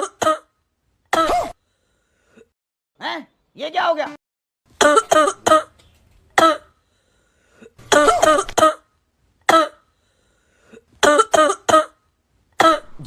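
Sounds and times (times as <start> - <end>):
person coughing: 1.1 - 1.6, 4.8 - 5.7, 6.4 - 6.7, 7.7 - 8.8, 9.5 - 9.8, 11.0 - 12.0, 12.6 - 13.0.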